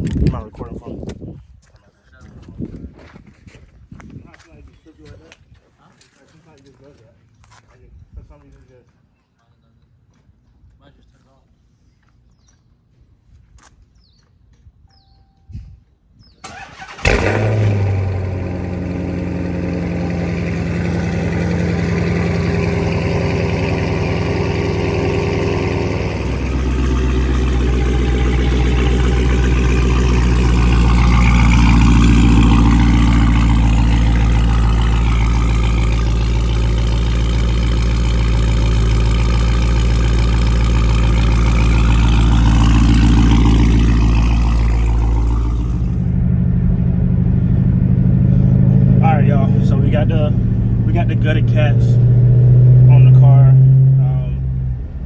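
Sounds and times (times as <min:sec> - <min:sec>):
car engine starting and idling: 0:16.4 - 0:55.0.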